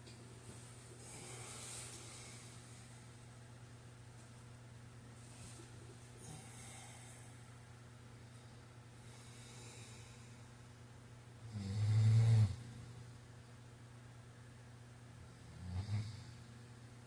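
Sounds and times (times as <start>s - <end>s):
man snoring: 11.5s - 12.8s, 15.4s - 16.4s.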